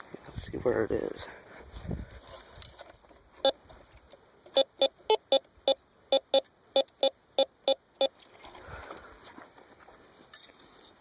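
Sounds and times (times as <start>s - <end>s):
metal detector beeps: 3.4s - 3.6s, 4.5s - 8.2s.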